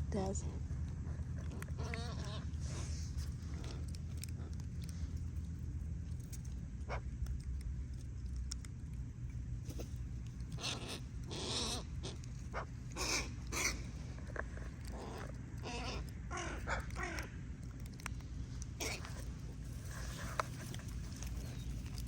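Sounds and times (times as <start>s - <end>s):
steady low rumble: 0.0s - 22.0s
crows cawing: 10.6s - 13.8s, 14.8s - 17.4s.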